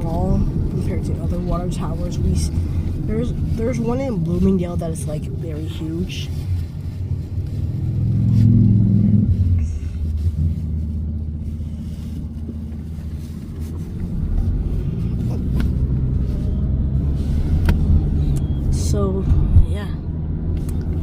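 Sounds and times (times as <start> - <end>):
car cabin low rumble: 0.0 - 21.0.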